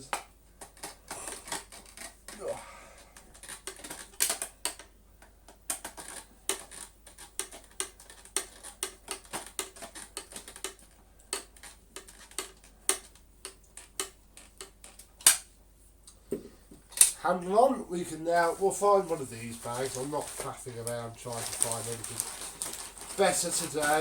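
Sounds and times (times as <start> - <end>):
vacuum parts clicking and tapping: 3.0 - 15.5, 19.4 - 24.0.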